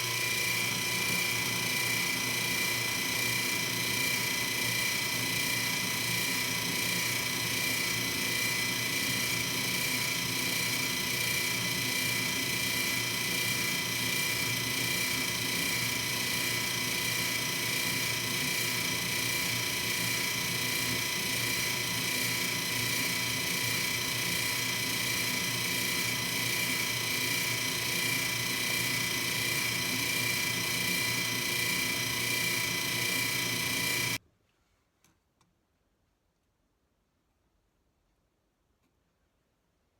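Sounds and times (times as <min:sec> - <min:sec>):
machine tool gear whine: 0:07.5 - 0:34.2.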